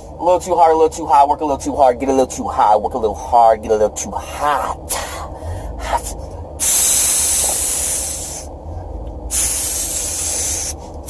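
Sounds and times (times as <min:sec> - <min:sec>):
spray hissing: 0:06.6 - 0:08.5, 0:09.3 - 0:10.8.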